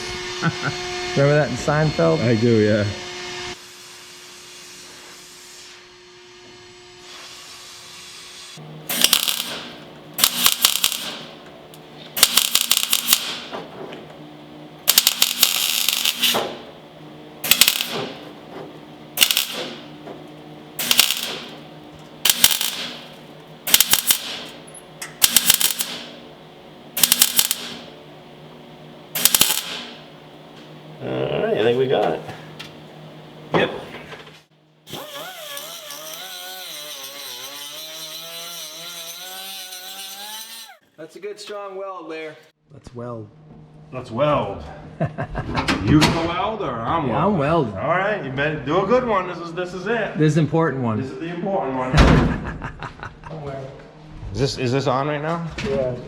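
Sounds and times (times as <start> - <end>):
steady hum: 8.6 - 37.5
crackling welding bursts: 8.8 - 13.6, 14.8 - 16.7, 17.4 - 18.4, 19.1 - 20.0, 20.7 - 26.2, 26.9 - 28.0, 29.1 - 30.1, 34.9 - 40.8.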